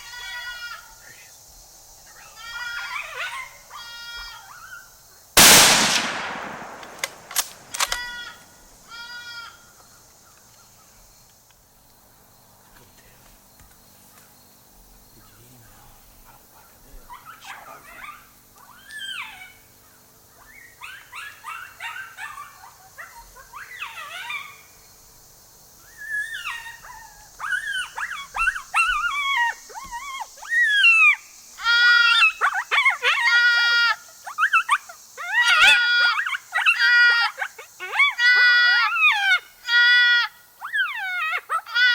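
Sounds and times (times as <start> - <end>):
coyote yips and howls: 2.1 - 4.9, 17.1 - 19.7, 20.3 - 24.8, 25.8 - 41.9.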